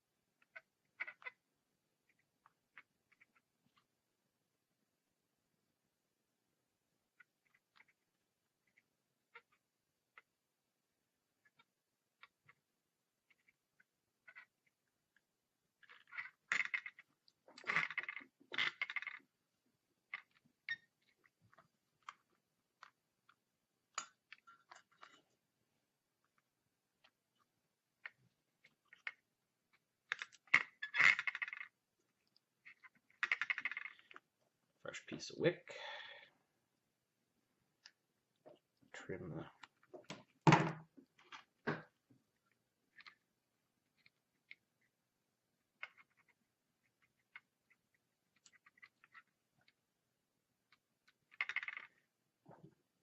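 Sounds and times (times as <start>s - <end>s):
crackle of clicks: 20.1s - 25.4s.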